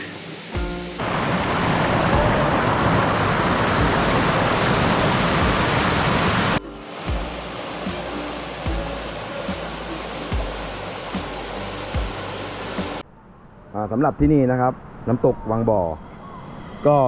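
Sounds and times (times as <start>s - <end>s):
waterfall roaring: 0.0s - 13.0s
background music: 0.5s - 13.0s.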